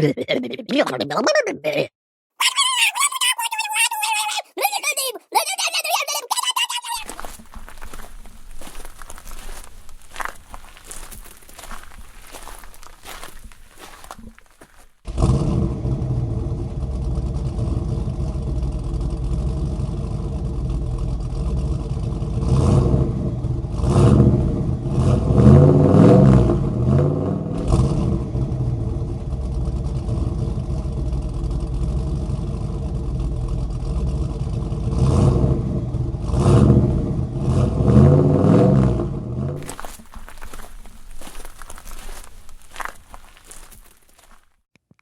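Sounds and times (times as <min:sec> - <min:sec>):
vehicle engine running and revving: 0:15.1 - 0:39.6.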